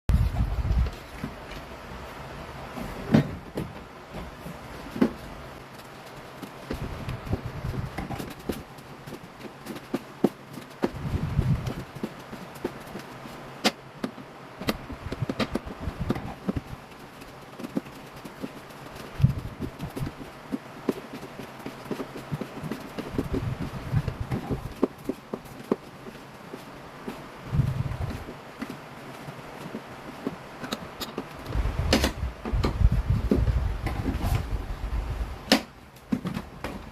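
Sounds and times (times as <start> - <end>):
air conditioner unit knocks: 3.0 - 5.2
knocks of plastic and metal parts: 6.4 - 27.2, 35.5 - 36.9.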